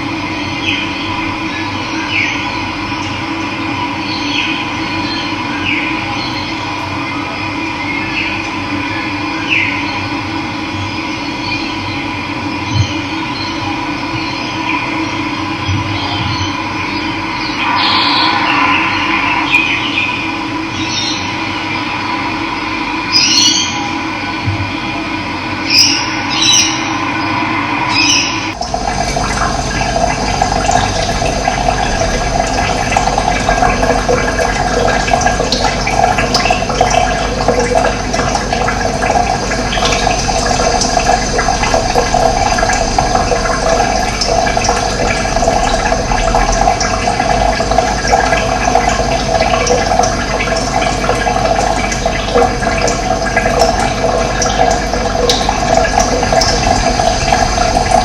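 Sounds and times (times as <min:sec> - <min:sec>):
running water rushing: 0:17.3 - 0:21.5, 0:25.7 - 0:58.0
short pitched sound: 0:17.4 - 0:21.3.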